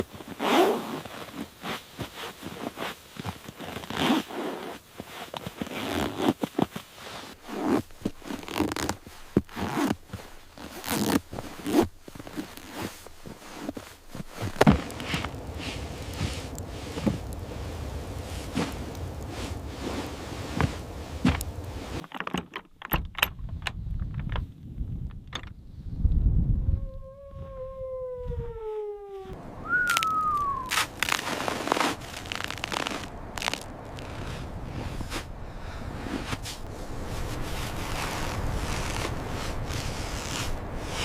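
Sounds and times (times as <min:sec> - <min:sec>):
crunching and scraping: 0:00.0 - 0:24.5, 0:29.2 - 0:41.0
steady low rumbling: 0:14.4 - 0:22.0.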